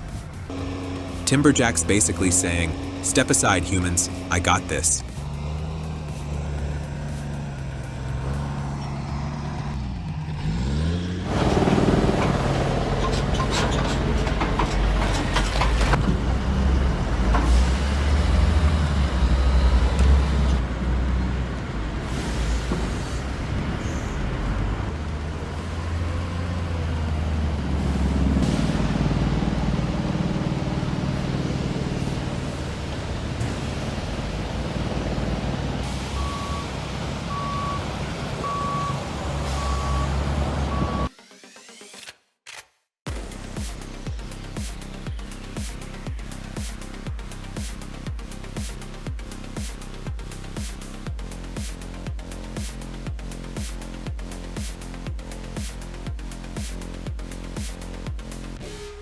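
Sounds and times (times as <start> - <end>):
heavy vehicle engine rumbling: 0.0 - 41.1
reversing alarm beeping: 36.1 - 41.8.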